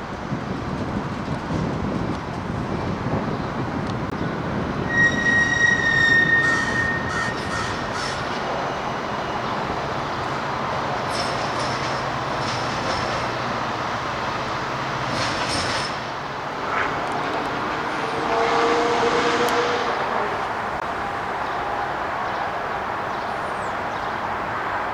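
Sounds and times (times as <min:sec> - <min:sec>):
train wheel and rail noise: 0:00.0 - 0:24.9
train clanks: 0:03.8 - 0:21.6.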